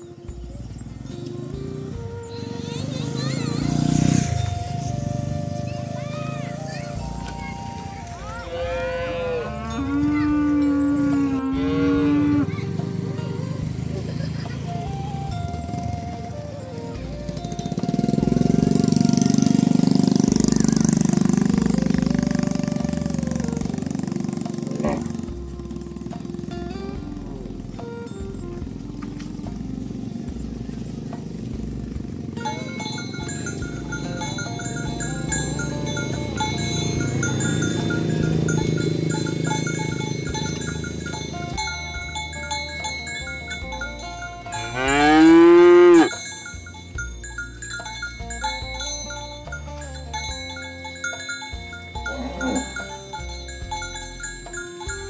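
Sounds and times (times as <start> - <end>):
small engine running: 0.0 - 55.0
cow mooing: 8.4 - 12.9, 20.1 - 25.3, 32.4 - 46.4, 52.0 - 53.1.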